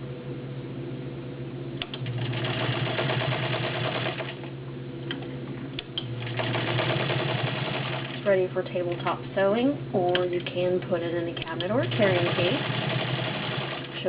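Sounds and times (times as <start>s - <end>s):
sewing machine stitching: 1.9s - 4.5s, 6.2s - 8.3s, 11.4s - 14.0s.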